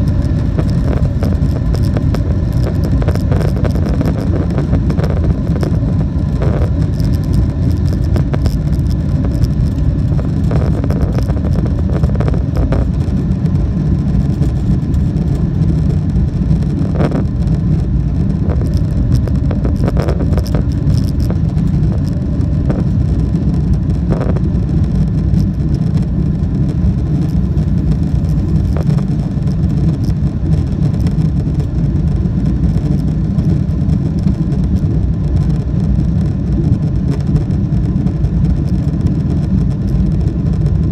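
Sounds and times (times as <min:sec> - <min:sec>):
faint rattles: 0:00.0 - 0:31.7
jet engine rumble in cabin: 0:00.0 - 0:40.9.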